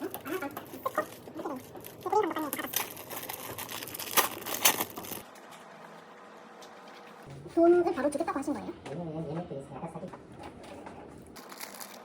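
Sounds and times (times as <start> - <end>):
handling noises: 0.0 - 5.5.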